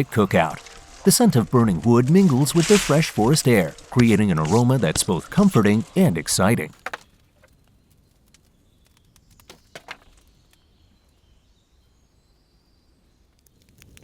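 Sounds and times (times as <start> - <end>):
sharp fire pops: 0.0 - 10.6
campfire crackling: 0.0 - 11.4
faint birdsong: 3.8 - 14.0.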